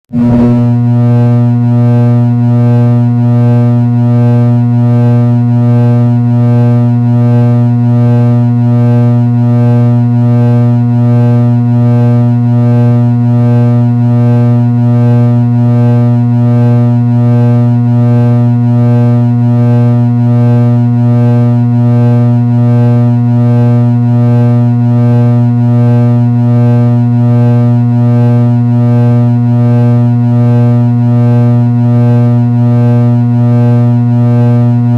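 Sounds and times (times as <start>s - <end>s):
ceiling fan motor humming: 0.1s - 3.1s.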